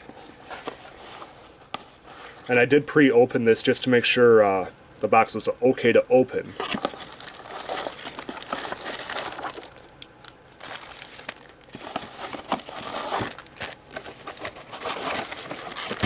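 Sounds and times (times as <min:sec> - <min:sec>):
packaging rustling and crinkling: 0:06.6 - 0:16.0.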